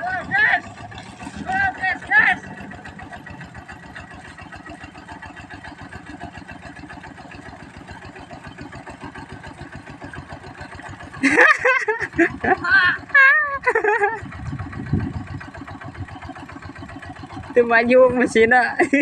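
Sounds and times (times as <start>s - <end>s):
person speaking loudly: 0.0s - 0.7s, 1.4s - 2.5s, 12.6s - 13.1s
diesel engine running: 0.0s - 19.0s.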